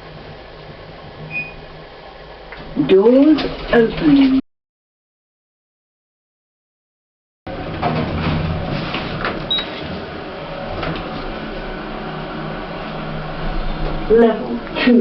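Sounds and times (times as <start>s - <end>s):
lift car knocks and rattles: 7.5s - 9.8s
lift drive humming: 7.5s - 15.0s.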